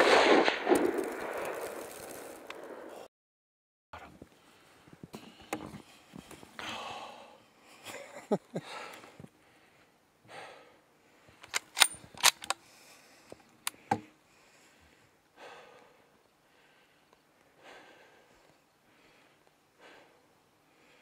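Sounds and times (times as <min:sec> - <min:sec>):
rifle shot: 0:00.0 - 0:02.9
sharp cracks and clicks: 0:00.1 - 0:02.7.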